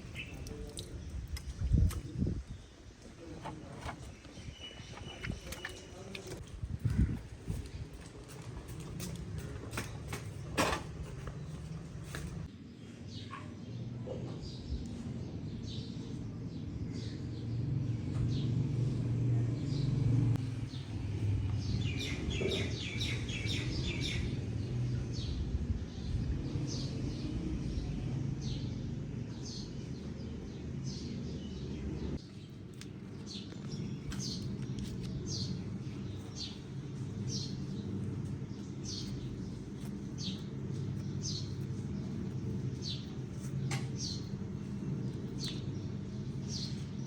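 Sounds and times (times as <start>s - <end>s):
small birds chirping: 0.0s - 10.5s, 19.6s - 47.0s
steady low rumble: 3.9s - 9.7s, 31.8s - 47.0s.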